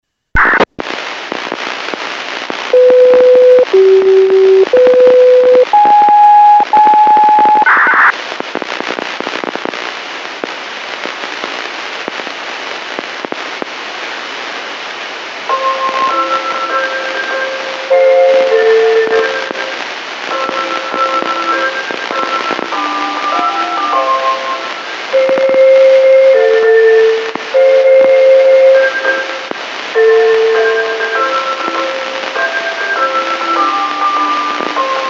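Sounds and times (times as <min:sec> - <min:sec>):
radio static hiss and crackling: 0:00.3 - 0:35.0
burst of noise: 0:00.4 - 0:04.9, 0:05.8 - 0:16.2
electronic tones: 0:02.7 - 0:08.1.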